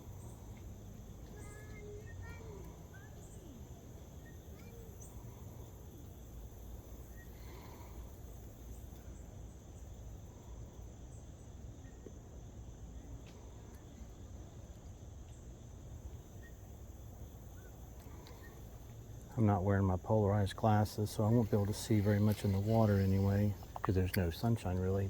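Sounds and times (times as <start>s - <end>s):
faint ticks: 0.0s - 6.0s, 17.6s - 19.3s, 21.2s - 25.0s
crickets chirring: 0.0s - 25.0s
low outdoor rumble: 0.0s - 25.0s.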